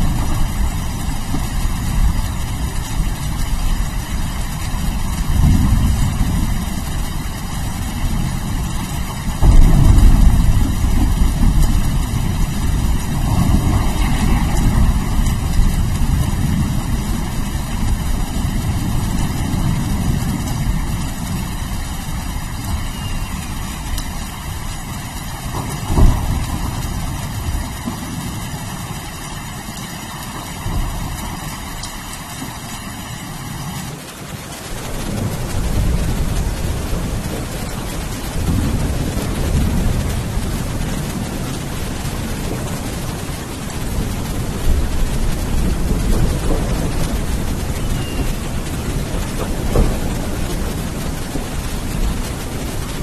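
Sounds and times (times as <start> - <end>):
low rumbling thunder: 0.0 - 53.0
steady rain: 0.0 - 53.0
sharp thunderclap: 4.9 - 28.8, 34.8 - 53.0.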